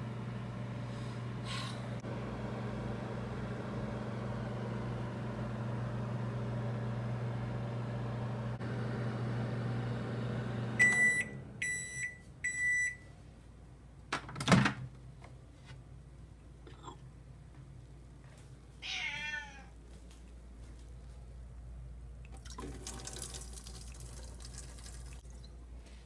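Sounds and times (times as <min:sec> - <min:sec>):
microwave oven humming: 0:00.0 - 0:13.2
microwave alert beeps: 0:10.7 - 0:13.1.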